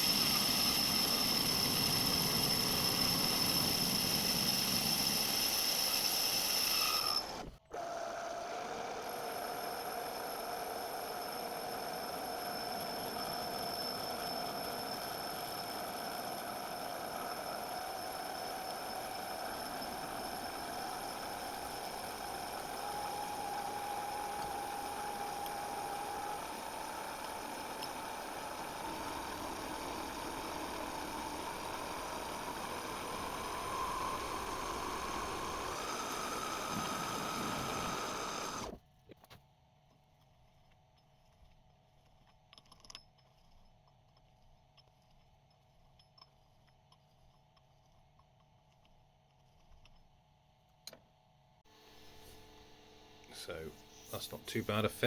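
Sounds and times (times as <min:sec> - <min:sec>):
metal lathe cutting steel: 0:00.0 - 0:08.4, 0:09.0 - 0:38.8.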